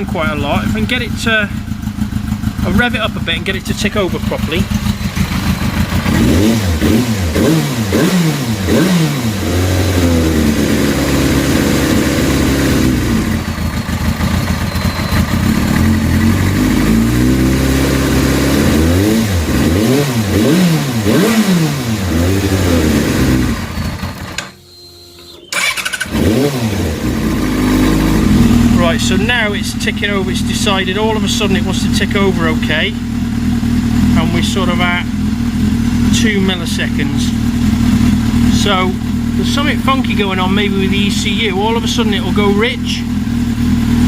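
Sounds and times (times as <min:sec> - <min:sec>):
motorcycle engine revving: 0:00.0 - 0:44.0.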